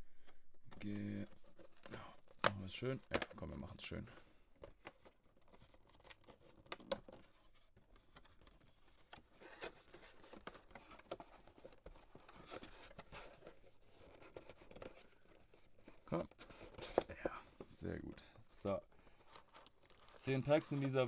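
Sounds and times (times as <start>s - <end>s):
wrapping rustling: 4.7s - 21.0s.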